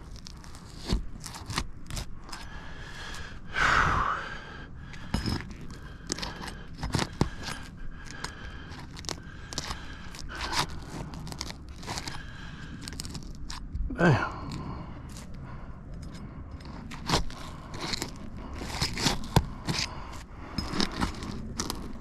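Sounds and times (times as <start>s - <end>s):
tool prying shingles: 0.0s - 2.4s, 5.0s - 13.6s, 16.6s - 22.0s
loud rasping scrape: 5.0s - 13.6s, 16.6s - 22.0s.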